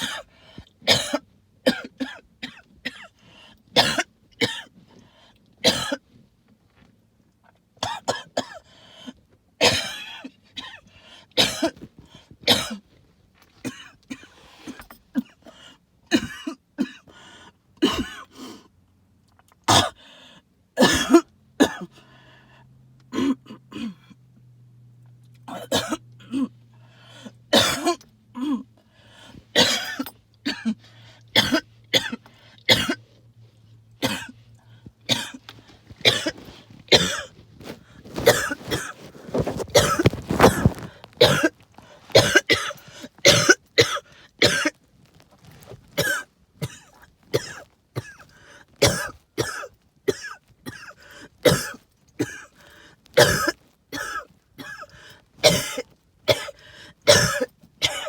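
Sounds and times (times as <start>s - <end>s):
person hacking cough: 0.0s - 3.1s, 3.7s - 4.7s, 5.6s - 6.0s, 7.8s - 8.6s, 9.6s - 10.8s, 11.4s - 12.8s, 13.6s - 17.1s, 17.8s - 18.4s, 19.7s - 20.0s, 20.8s - 21.9s, 23.1s - 24.1s, 25.5s - 26.5s, 27.5s - 28.7s, 29.6s - 30.8s, 31.4s - 33.0s, 34.0s - 34.4s, 35.1s - 35.4s, 36.0s - 37.3s, 38.2s - 44.7s, 46.0s - 48.2s, 48.8s - 52.5s, 53.2s - 58.0s.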